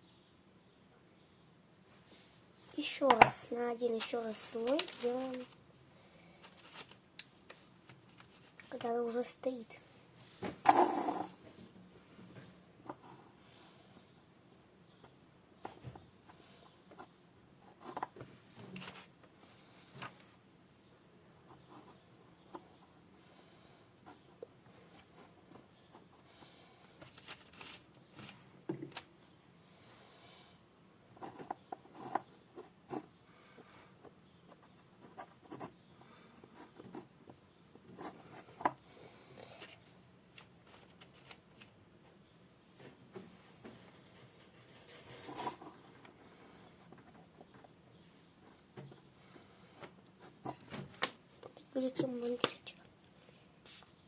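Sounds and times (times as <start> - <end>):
hands tapping and rubbing plasticine: 2.7 - 5.6, 6.4 - 9.3, 31.2 - 38.9
hands handling plasticine figure: 2.7 - 5.7, 6.3 - 9.7, 24.1 - 29.1, 36.4 - 42.3.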